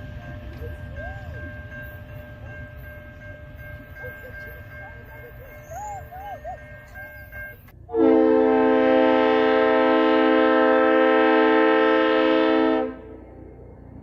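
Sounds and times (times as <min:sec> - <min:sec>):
locomotive air horn blast: 0:07.9 - 0:13.5.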